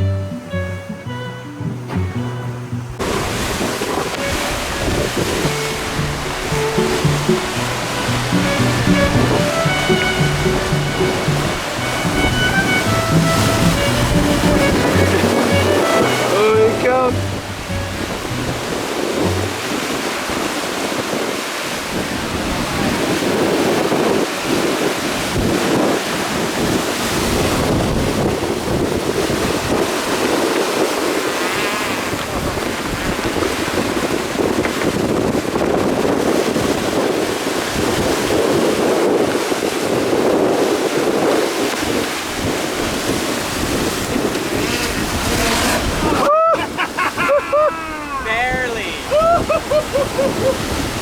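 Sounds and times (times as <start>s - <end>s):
water rushing along hull: 0.0s - 51.0s
wind buffeting microphone: 1.6s - 51.0s.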